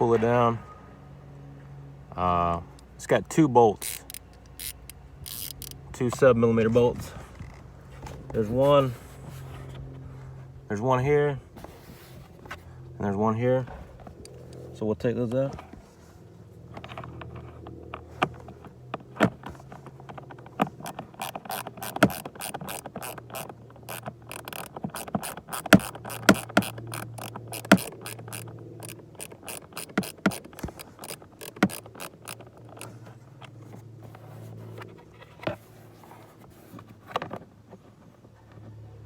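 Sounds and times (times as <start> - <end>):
ratchet wrench clicking: 3.8 - 6.2, 20.7 - 33.0.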